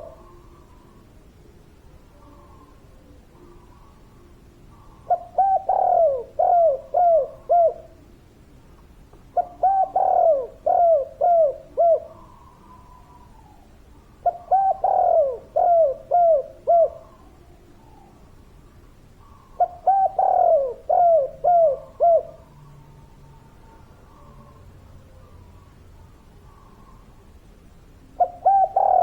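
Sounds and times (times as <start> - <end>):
dove cooing: 0.0 - 1.2, 2.2 - 8.2, 9.3 - 18.2, 19.2 - 25.8, 28.0 - 29.0.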